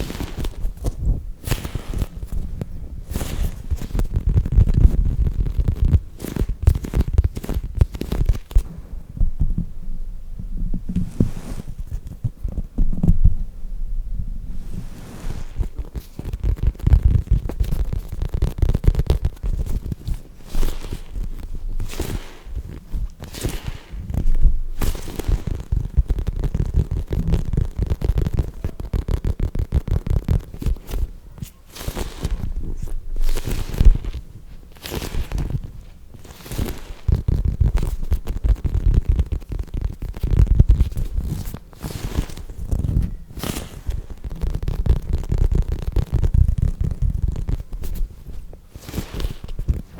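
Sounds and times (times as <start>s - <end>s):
soft low thumps: 0.0s - 49.9s
brief rustle: 14.5s - 49.9s
foam toys squeezed on microphone: 14.7s - 48.1s.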